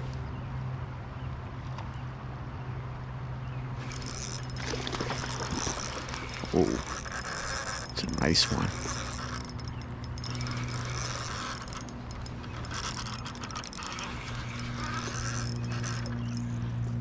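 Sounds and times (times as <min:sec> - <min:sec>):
fishing reel ratcheting: 0:03.8 - 0:17.0.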